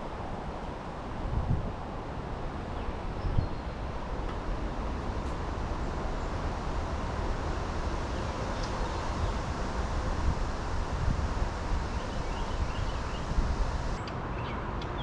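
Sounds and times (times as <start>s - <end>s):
wind rumbling on microphone: 0.0s - 14.0s.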